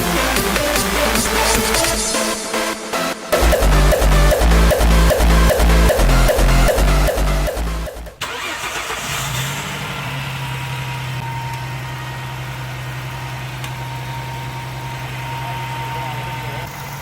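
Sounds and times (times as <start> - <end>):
music with a beat: 0.0 - 8.2
engine idling: 0.0 - 17.0.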